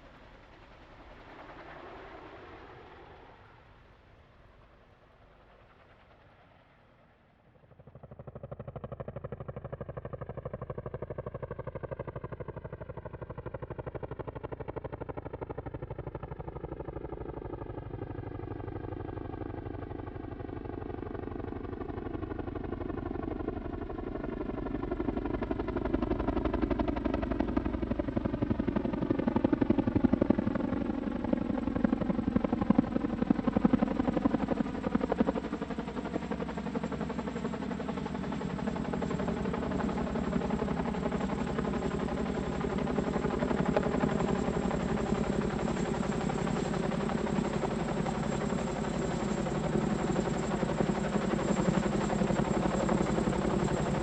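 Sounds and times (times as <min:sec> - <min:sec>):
helicopter rotor chop: 0:25.2 - 0:54.0.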